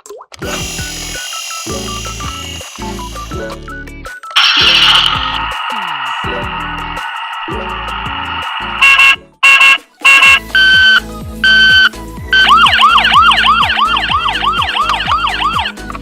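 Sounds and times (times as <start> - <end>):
background music: 0.4 - 16.0
electronic siren beeps and tones: 4.3 - 15.8
warbling siren yelp: 12.4 - 15.8.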